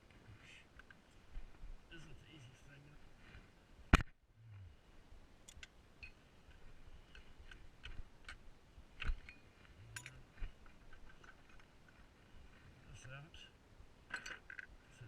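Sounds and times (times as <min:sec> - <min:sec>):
parts clicking and knocking: 0:09.0 - 0:11.7.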